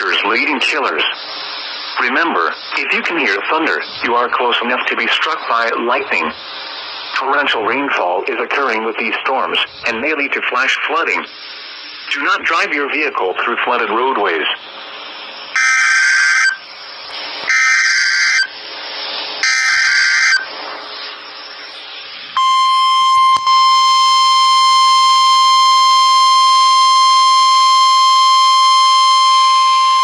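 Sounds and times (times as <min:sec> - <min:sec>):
radio hiss: 0:00.0 - 0:30.0
screeching digital data bursts: 0:15.5 - 0:16.7, 0:17.4 - 0:18.6, 0:19.4 - 0:21.8, 0:22.4 - 0:30.0
steady warning alarm tone: 0:15.5 - 0:18.6, 0:19.4 - 0:30.0.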